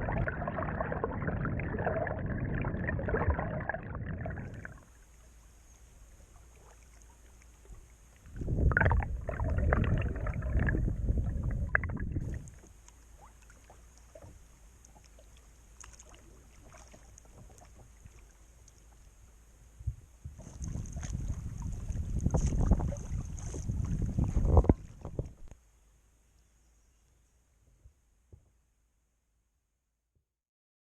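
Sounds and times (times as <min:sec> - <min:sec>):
paddle splashing water: 0:12.2 - 0:19.2, 0:20.3 - 0:25.5.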